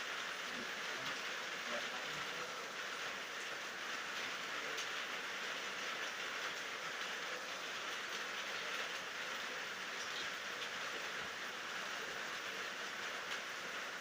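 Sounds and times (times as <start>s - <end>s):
steady rainfall: 0.0s - 14.0s
raindrop ticks: 3.4s - 5.2s.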